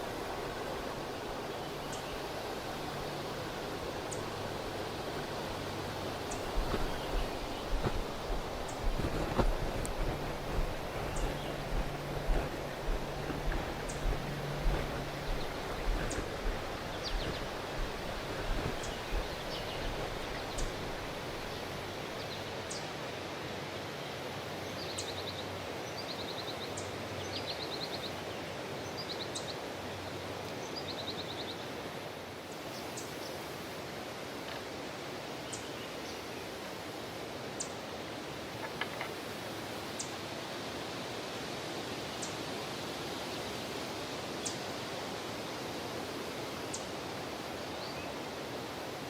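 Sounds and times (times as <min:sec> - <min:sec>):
small birds trilling: 0:00.0 - 0:22.8
outdoor ambience: 0:00.0 - 0:24.7, 0:31.8 - 0:49.0.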